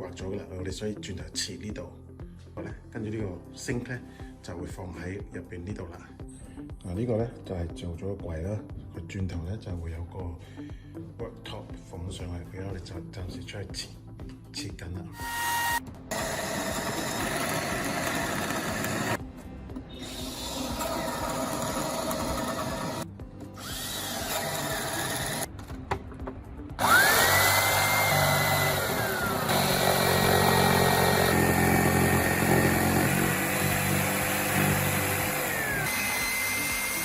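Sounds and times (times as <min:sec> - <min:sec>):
motor spinning up to high whine: 0:15.2 - 0:19.2, 0:20.0 - 0:23.0, 0:23.6 - 0:25.5, 0:26.8 - 0:37.0
power tools running: 0:15.2 - 0:19.2, 0:20.0 - 0:25.5, 0:26.8 - 0:37.0.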